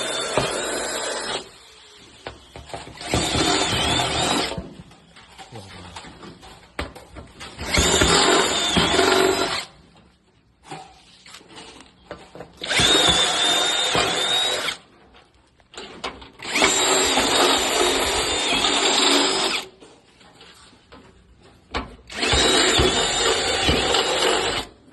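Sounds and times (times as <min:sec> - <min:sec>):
power tool running: 0:00.0 - 0:04.6, 0:07.6 - 0:09.8, 0:12.6 - 0:14.8, 0:16.4 - 0:19.7, 0:22.1 - 0:24.8.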